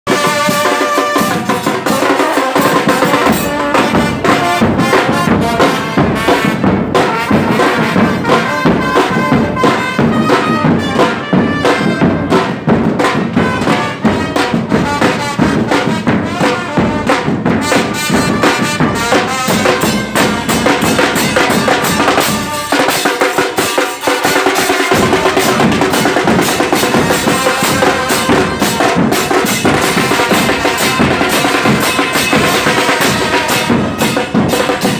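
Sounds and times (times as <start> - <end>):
loud music with drums: 0.1 - 34.9.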